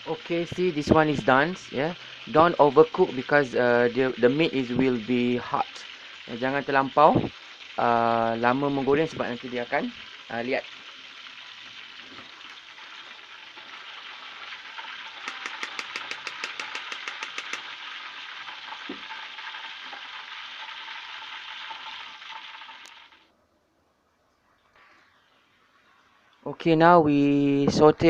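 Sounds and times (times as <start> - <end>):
meat sizzling in hot oil: 0.0 - 23.3
rapid clicking of stirring: 14.6 - 17.8.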